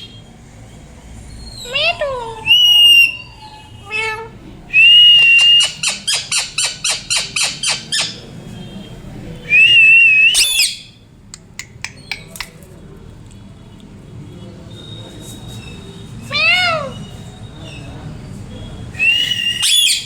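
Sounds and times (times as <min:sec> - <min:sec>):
parrot whistling and chattering: 0:01.5 - 0:08.2, 0:09.5 - 0:11.0, 0:16.3 - 0:17.1, 0:19.0 - 0:20.0
parrot squawk: 0:16.3 - 0:17.1, 0:19.0 - 0:20.0.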